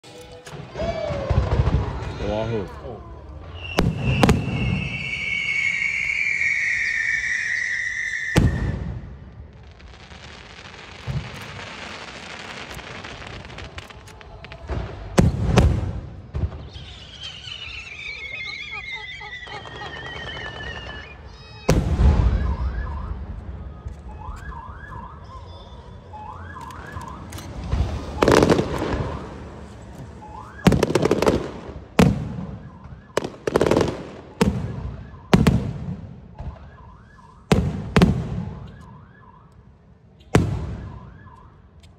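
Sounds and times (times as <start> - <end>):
firework crackling: 0.1 - 24.3, 25.8 - 36.2
descending firework whistles: 0.6 - 2.6, 3.4 - 39.3, 40.4 - 41.5
short rising whistles: 3.6 - 8.6, 16.6 - 23.0.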